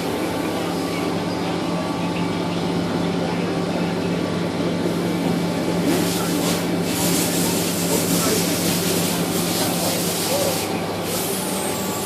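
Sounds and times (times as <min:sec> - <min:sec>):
machining center mechanical hum: 0:00.0 - 0:12.0.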